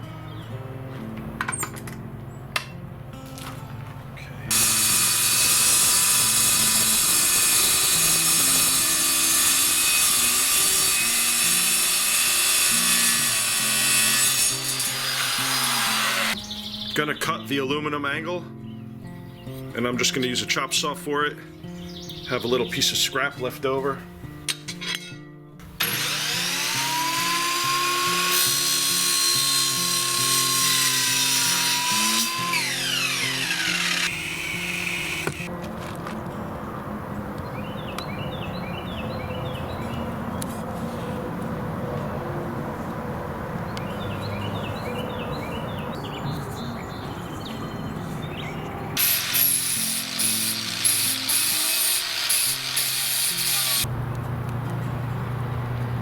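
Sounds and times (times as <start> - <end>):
power saw cutting: 4.5 - 16.4, 25.8 - 35.5, 49.0 - 53.9.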